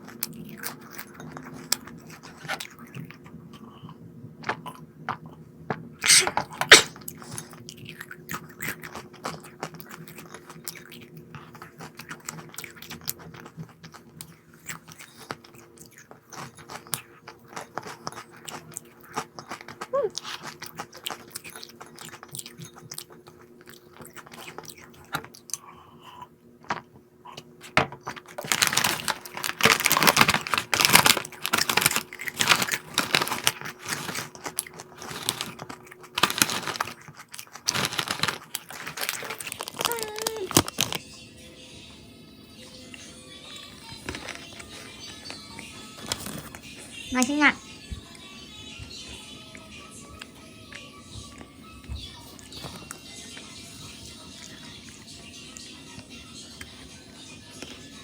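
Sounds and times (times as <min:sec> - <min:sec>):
crunching crisp snack: 0:06.0 - 0:26.2, 0:27.6 - 0:41.1, 0:43.0 - 0:46.9
loud crinkling: 0:28.3 - 0:41.0, 0:43.9 - 0:46.7.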